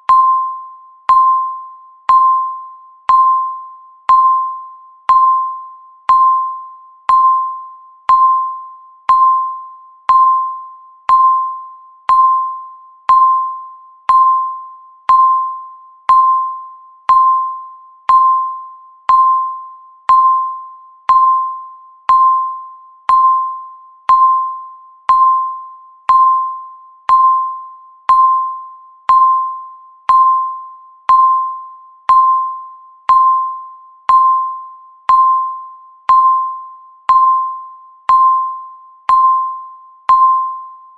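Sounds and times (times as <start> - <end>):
countdown timer beeps: 0.0 - 40.9.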